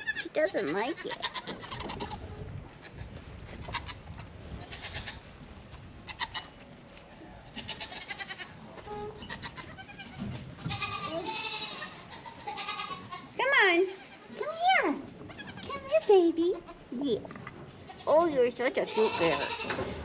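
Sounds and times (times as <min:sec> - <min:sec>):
goats bleating: 0:00.0 - 0:05.3, 0:06.0 - 0:06.6, 0:07.4 - 0:14.4, 0:15.2 - 0:15.9, 0:17.7 - 0:20.0.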